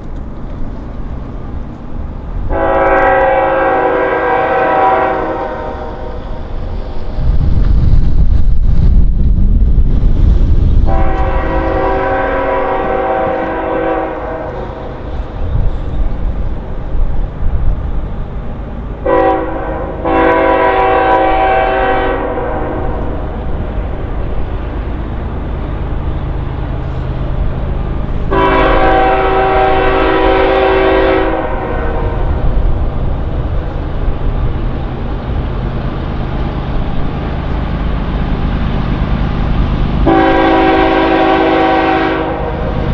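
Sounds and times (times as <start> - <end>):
low rumble of train: 0.0 - 42.9
locomotive air horn blasts: 2.5 - 6.2, 10.9 - 15.0, 19.0 - 23.1, 28.3 - 32.4, 40.0 - 42.8.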